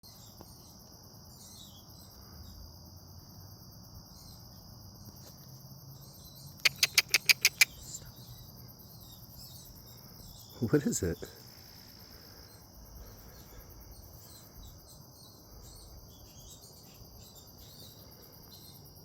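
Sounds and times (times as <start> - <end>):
insects chirring: 0.1 - 19.0
animal call sharp notes: 6.6 - 8.0.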